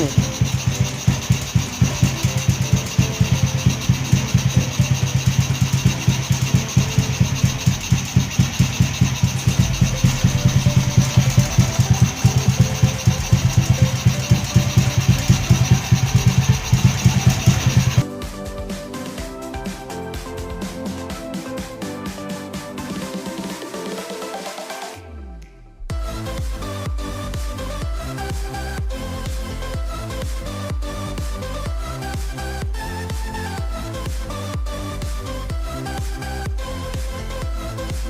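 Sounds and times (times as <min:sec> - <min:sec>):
motorcycle engine idling: 0:00.0 - 0:18.0.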